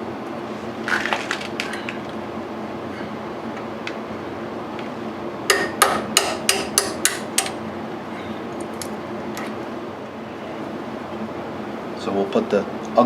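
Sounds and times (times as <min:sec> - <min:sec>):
hammer tapping on steel: 0:05.5 - 0:07.6.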